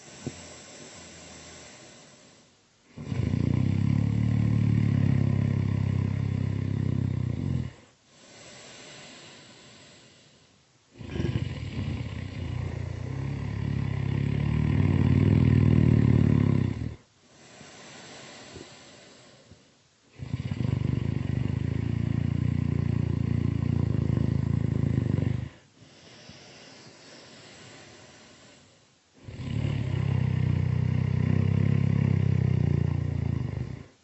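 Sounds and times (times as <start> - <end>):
breathy exhale: 0.0 - 2.6, 8.1 - 11.2, 17.3 - 19.8, 25.8 - 28.9
loud rattling snoring: 2.9 - 7.9, 11.0 - 19.2, 20.1 - 25.6, 29.2 - 34.0.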